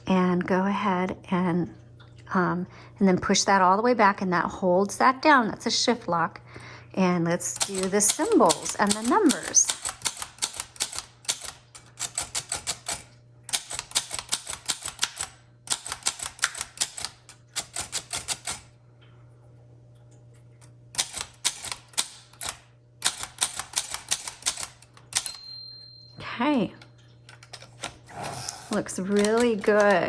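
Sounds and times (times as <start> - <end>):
typewriter keys clacking: 7.5 - 18.7, 21.0 - 25.4, 28.8 - 30.0.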